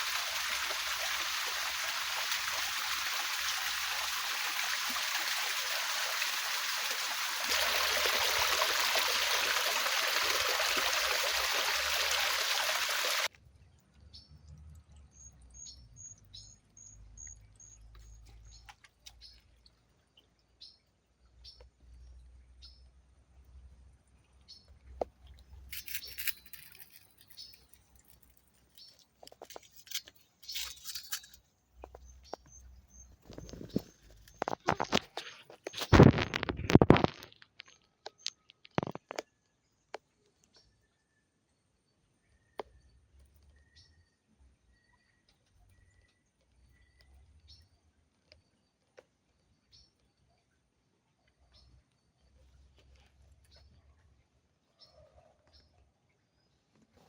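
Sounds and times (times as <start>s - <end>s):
rushing river water: 0.0s - 13.3s
small birds chirping: 7.1s - 23.0s, 24.2s - 36.2s.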